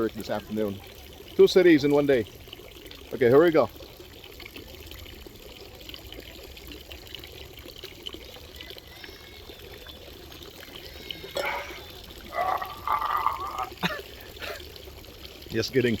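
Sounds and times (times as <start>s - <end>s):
water running into basin: 0.0s - 16.0s
short vocal sounds: 11.3s - 13.9s.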